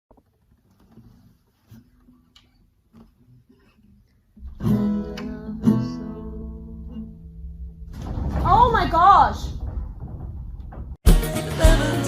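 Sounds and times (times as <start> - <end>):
acoustic guitar strumming chords: 4.4 - 7.8, 11.0 - 12.0.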